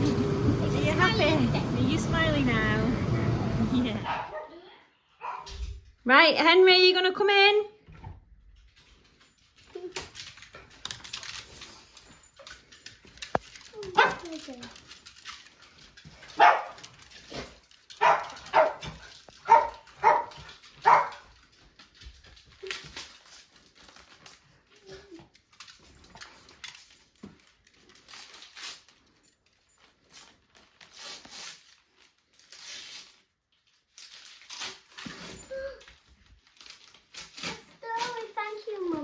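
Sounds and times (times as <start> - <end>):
dog barking: 4.0 - 4.5, 5.2 - 5.5, 13.9 - 14.3, 16.4 - 16.8, 18.0 - 21.2.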